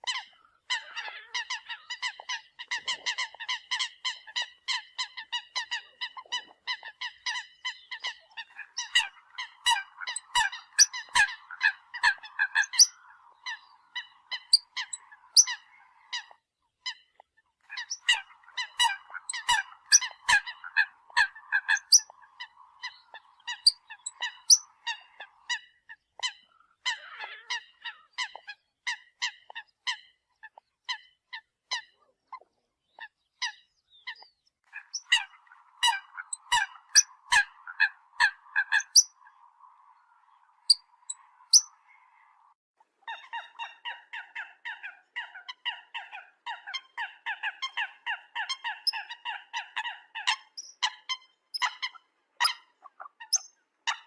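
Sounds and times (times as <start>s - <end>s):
coots honking calls: 0.0s - 16.3s, 17.7s - 28.5s, 34.8s - 39.4s.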